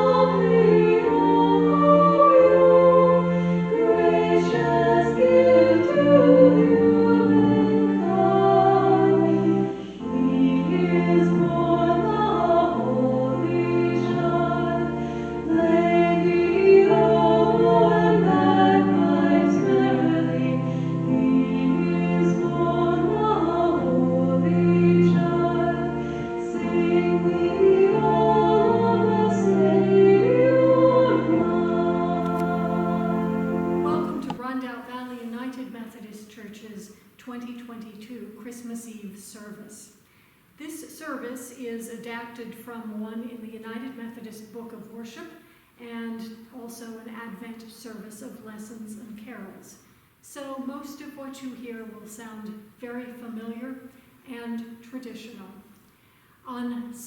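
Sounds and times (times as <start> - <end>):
choir singing a hymn: 0.0 - 35.6.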